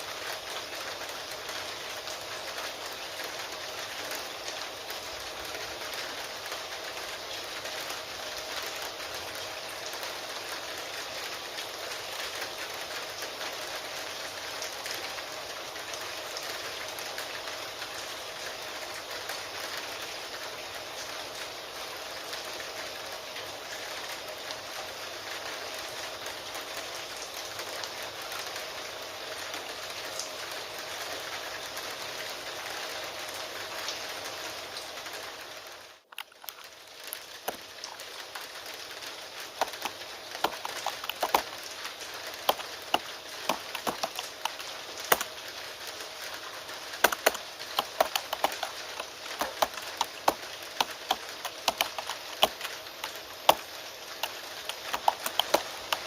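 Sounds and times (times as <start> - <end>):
rain hiss: 0.0 - 56.0
computer keyboard typing: 39.6 - 41.6, 42.4 - 45.3, 47.0 - 56.0.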